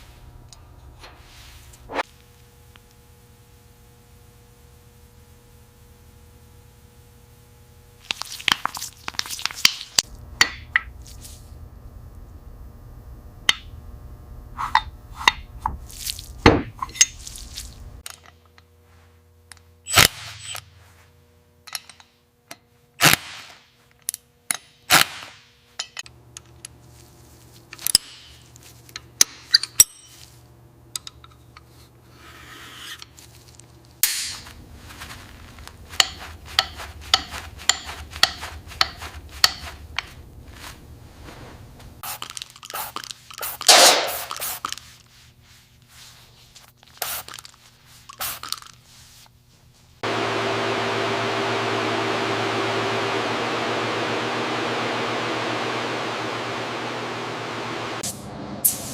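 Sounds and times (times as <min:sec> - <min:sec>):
low steady hum: 0:00.0 - 0:22.9, 0:33.0 - 0:42.0, 0:49.2 - 0:58.9
metal tools clinking: 0:29.5 - 0:30.3.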